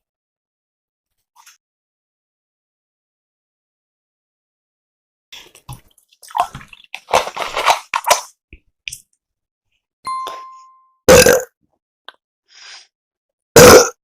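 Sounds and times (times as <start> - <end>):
bright ding: 10.1 - 11.0
loud short burp: 11.1 - 11.5, 13.6 - 14.0.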